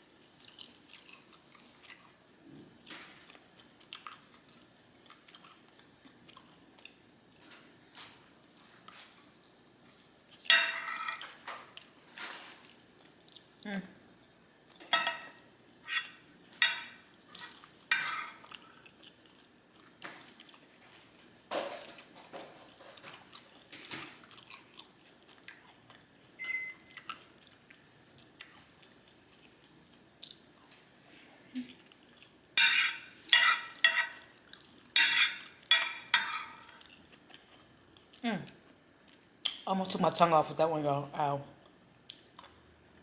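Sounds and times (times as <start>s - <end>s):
person chewing noodles: 0.4s - 7.1s, 11.8s - 14.2s, 17.3s - 20.8s, 22.7s - 30.7s, 31.6s - 32.4s, 34.2s - 35.7s, 36.6s - 39.3s.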